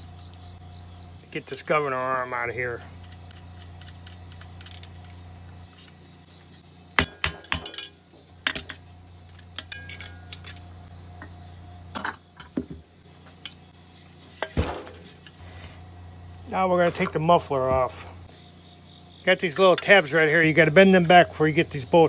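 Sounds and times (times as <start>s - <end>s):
steady low hum: 0.0s - 22.0s
metal tools clinking: 7.5s - 8.6s, 9.6s - 10.6s.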